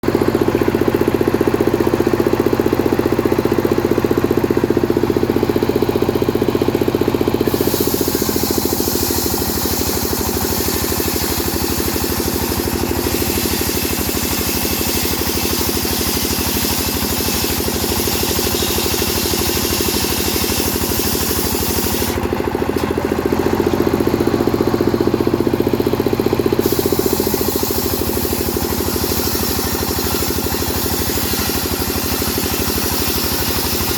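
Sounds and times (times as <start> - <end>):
chainsaw engine running: 0.0 - 33.9
chainsaw chain cutting wood: 7.4 - 23.8, 26.6 - 33.9.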